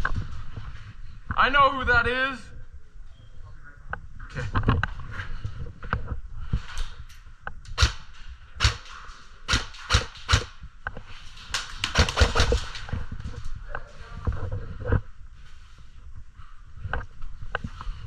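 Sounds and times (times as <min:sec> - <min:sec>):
airsoft guns firing: 0:07.8 - 0:10.6, 0:11.4 - 0:12.9.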